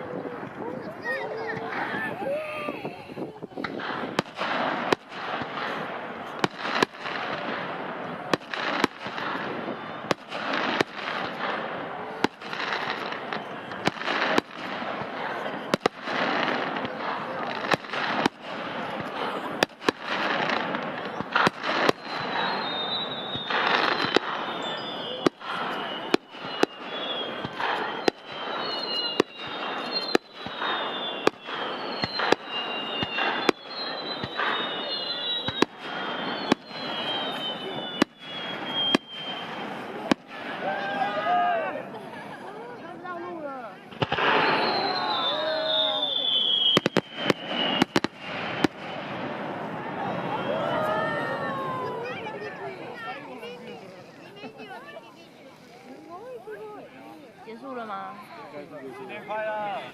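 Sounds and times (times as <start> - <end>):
firework shells bursting: 3.6 - 40.6, 43.9 - 49.7.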